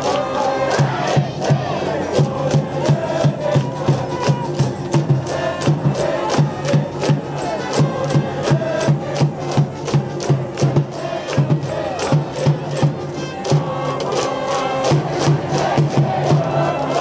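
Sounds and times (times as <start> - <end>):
crowd chanting: 0.0 - 17.0
steady drum beat: 0.0 - 17.0
brass band playing: 6.0 - 17.0.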